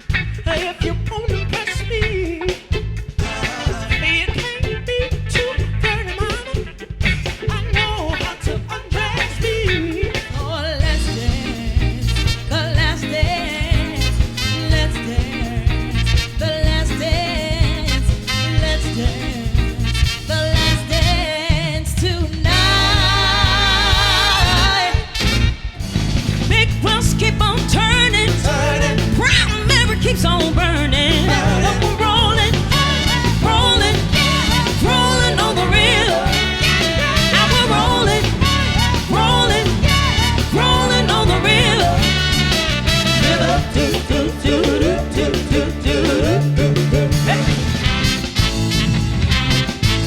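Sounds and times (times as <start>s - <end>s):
live soul band playing: 0.0s - 50.0s
person singing: 3.2s - 5.6s, 26.7s - 47.8s.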